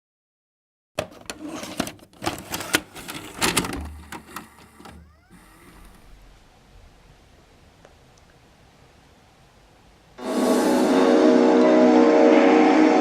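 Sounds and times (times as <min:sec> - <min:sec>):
sliding tone: 0:01.2 - 0:06.4.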